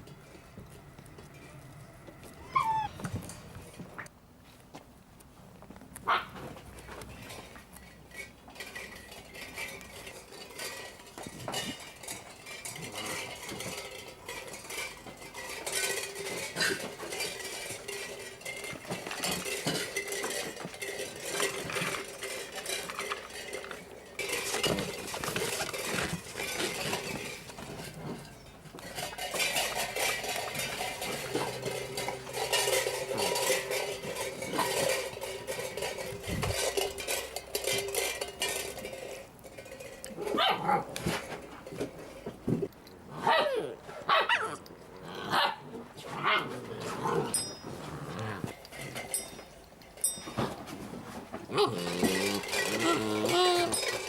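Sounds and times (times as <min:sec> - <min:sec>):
puppy squealing: 0:02.4 - 0:03.0.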